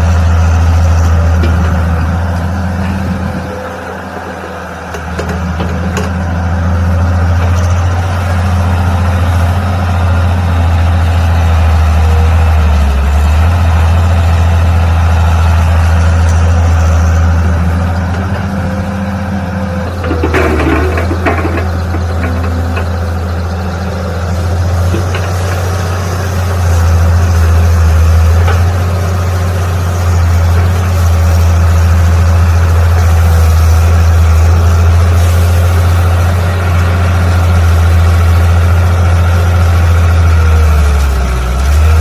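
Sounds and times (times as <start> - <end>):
mini excavator engine running: 0.0 - 42.0
rattling or clanking: 19.9 - 23.0.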